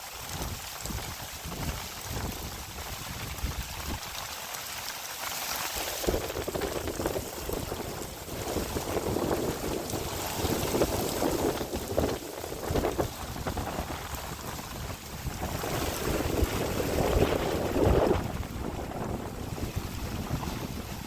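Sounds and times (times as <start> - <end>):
rain: 0.0 - 21.0
wind gusting against microphone: 5.8 - 21.0.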